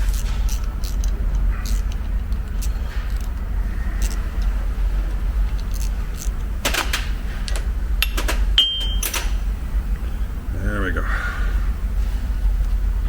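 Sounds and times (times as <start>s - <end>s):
steady low hum: 0.0s - 13.0s
short metallic ring: 8.0s - 9.4s.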